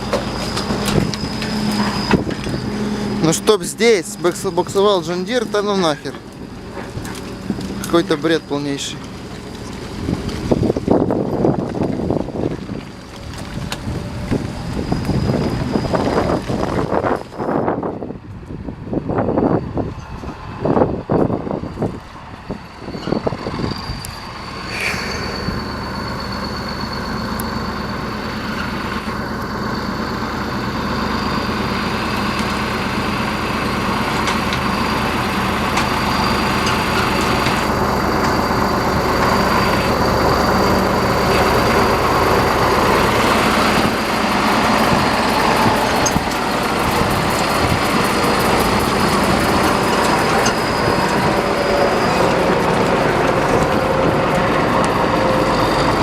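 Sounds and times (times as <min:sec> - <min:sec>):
tractor diesel engine running: 0:00.0 - 0:56.0
thin high whine: 0:22.9 - 0:28.0.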